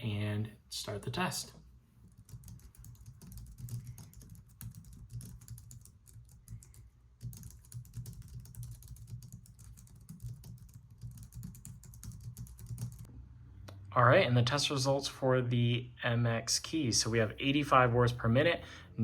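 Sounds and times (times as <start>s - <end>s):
soft keyboard typing: 2.0s - 13.1s.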